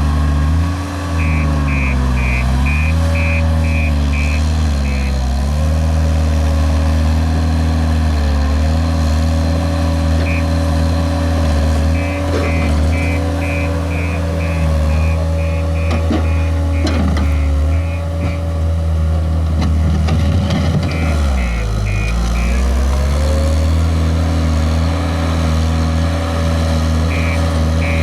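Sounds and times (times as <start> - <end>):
diesel engine running: 0.0 - 28.0
reversing alarm beeping: 1.2 - 5.4, 10.1 - 10.8, 11.8 - 18.6, 20.6 - 23.0, 27.0 - 28.0.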